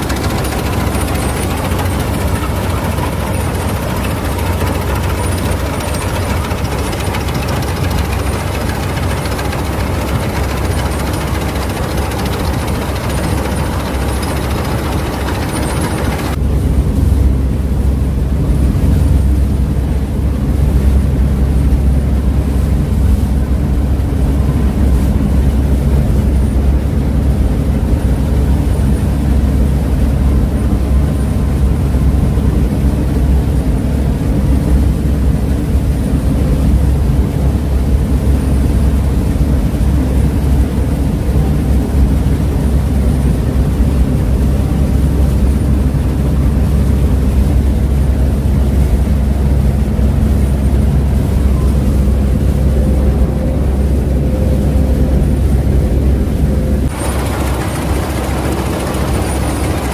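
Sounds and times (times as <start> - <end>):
hiss and rattle: 0.0 - 16.4, 56.9 - 59.9
combine harvester engine drone: 0.0 - 59.9.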